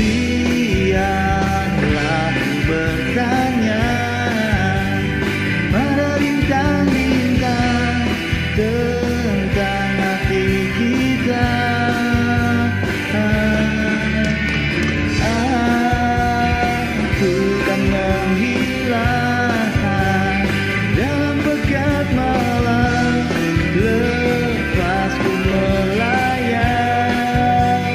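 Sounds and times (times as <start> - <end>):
pop-rock backing track: 0.0 - 27.9.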